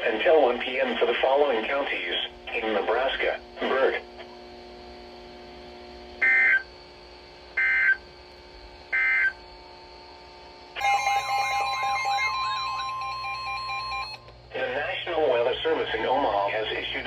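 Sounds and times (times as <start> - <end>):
faint radio hum: 0.0 - 4.4, 14.5 - 17.0
digital data tone bursts: 10.8 - 14.3
warbling electronic tones: 10.8 - 14.3
steady tone: 10.8 - 14.6.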